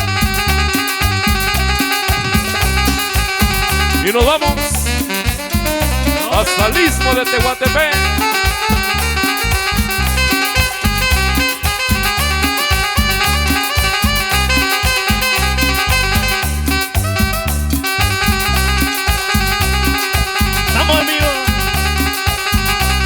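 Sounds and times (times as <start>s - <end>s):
tropical dance band instrumental: 0.0s - 23.0s.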